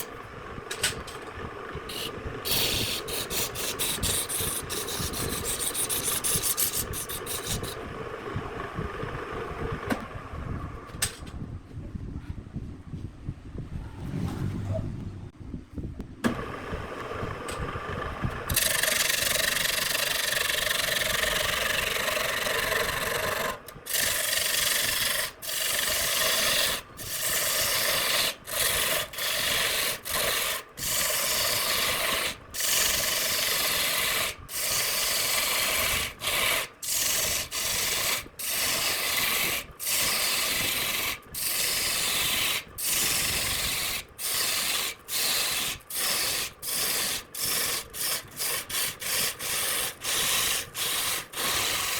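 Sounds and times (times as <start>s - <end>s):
sandpaper rasping on wood: 1.9s - 7.8s, 18.6s - 51.9s.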